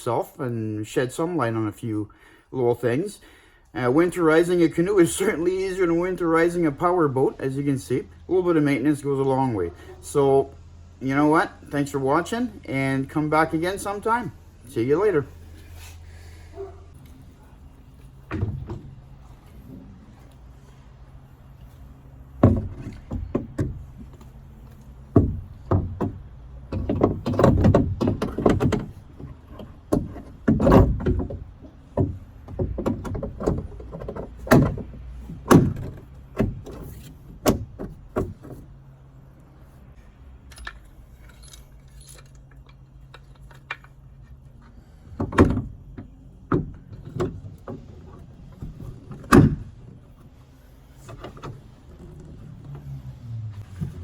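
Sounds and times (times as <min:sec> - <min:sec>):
knocks and jangling rattles: 0:40.3 - 0:50.2.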